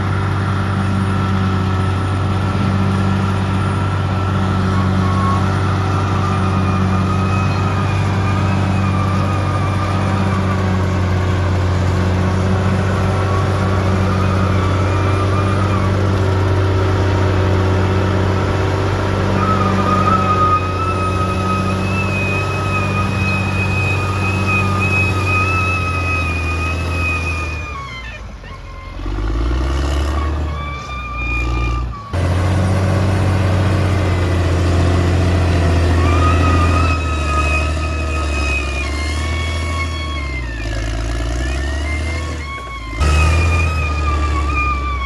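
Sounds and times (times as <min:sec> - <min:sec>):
bulldozer diesel engine droning: 0:00.0 - 0:45.0.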